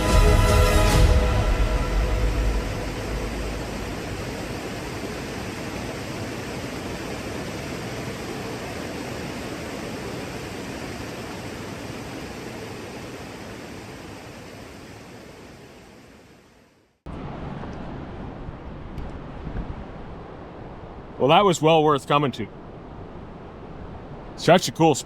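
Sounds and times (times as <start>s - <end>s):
waterfall rushing: 0.0s - 15.5s, 24.2s - 25.0s
quiet outdoor noise: 1.5s - 25.0s.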